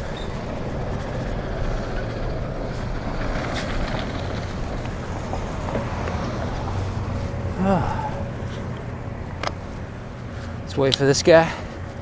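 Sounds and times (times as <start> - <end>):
bicycle road noise: 0.0 - 12.0
rushing wind: 0.0 - 12.0.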